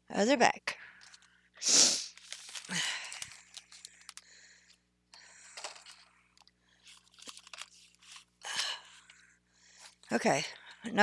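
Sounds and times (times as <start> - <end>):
bags and packages rustling: 2.0 - 4.3, 5.4 - 9.1.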